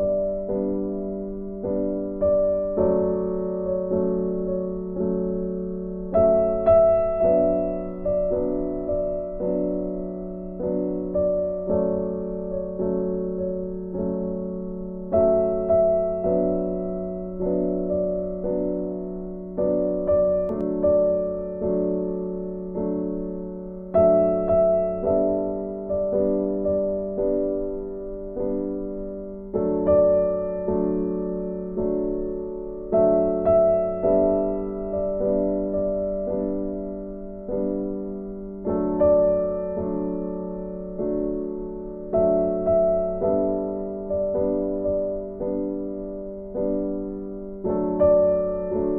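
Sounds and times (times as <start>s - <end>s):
slow piano music: 0.0s - 48.9s.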